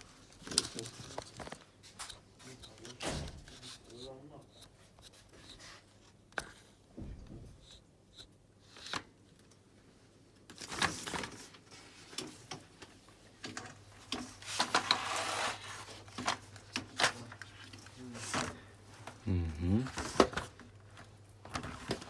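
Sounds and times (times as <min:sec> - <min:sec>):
plastic parts rubbing and scraping: 0:14.0 - 0:19.2.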